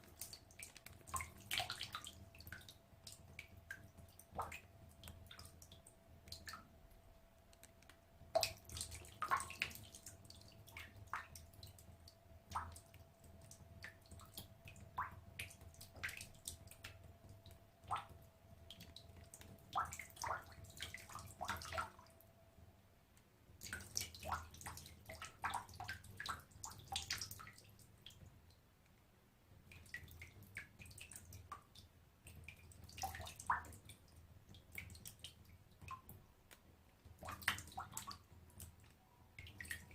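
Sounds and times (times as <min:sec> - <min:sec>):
water drops falling into bathtub: 0:00.1 - 0:06.7, 0:07.5 - 0:11.9, 0:12.5 - 0:22.1, 0:29.7 - 0:39.9.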